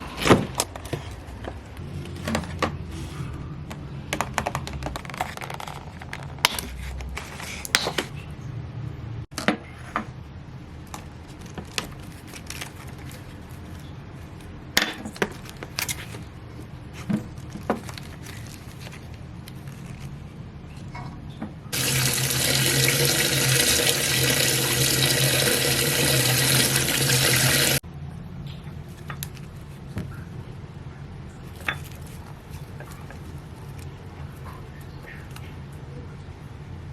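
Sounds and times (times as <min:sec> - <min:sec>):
objects clicking and knocking: 0:03.7 - 0:08.1
tap water running: 0:21.7 - 0:27.8.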